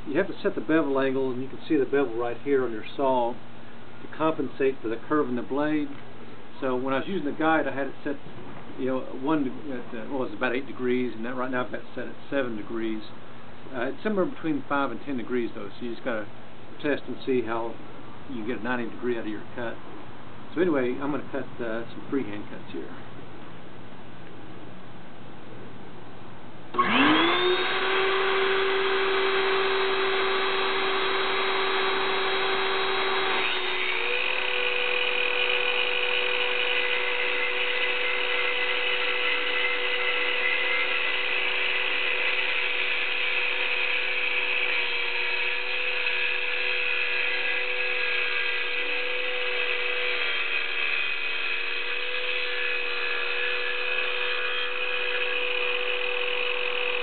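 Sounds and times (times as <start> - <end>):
circular saw cutting concrete: 26.8 - 57.0.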